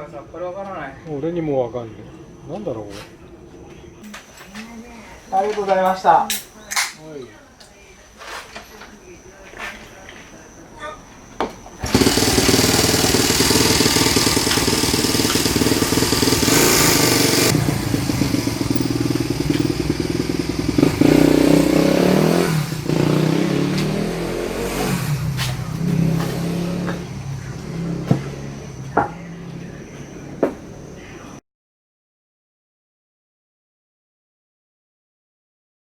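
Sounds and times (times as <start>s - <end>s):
abnormal mechanical engine noise: 8.8s - 31.4s
motorcycle engine running: 11.8s - 31.0s.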